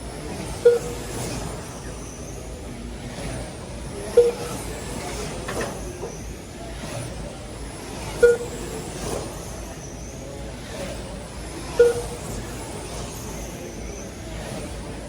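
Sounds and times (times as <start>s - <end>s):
rc car motors whining: 0.0s - 15.0s
short timing beep: 0.6s - 1.5s, 4.1s - 4.7s, 8.2s - 8.7s, 11.8s - 12.4s.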